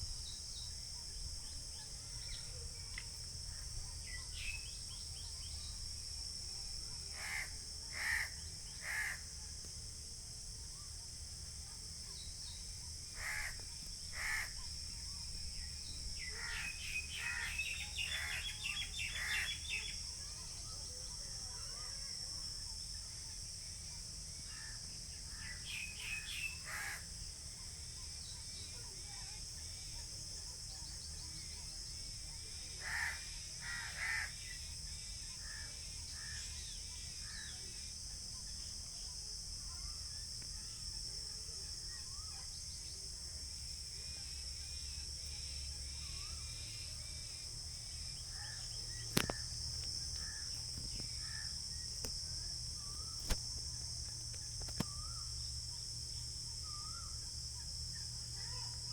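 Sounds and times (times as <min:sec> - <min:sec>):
crows cawing: 0:07.2 - 0:09.2, 0:13.2 - 0:13.6, 0:14.2 - 0:14.5, 0:26.7 - 0:27.0, 0:32.8 - 0:34.3
high-pitched insect drone: 0:11.2 - 0:22.2, 0:23.0 - 0:58.9
small birds chirping: 0:11.6 - 0:21.9, 0:45.2 - 0:58.9
sharp click: 0:53.2 - 0:53.5.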